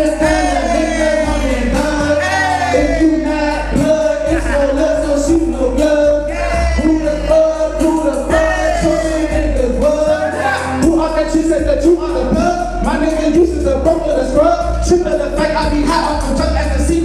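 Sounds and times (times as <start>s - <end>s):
hip hop music with heavy bass: 0.0s - 17.0s
person singing melodic vocal: 0.0s - 17.0s.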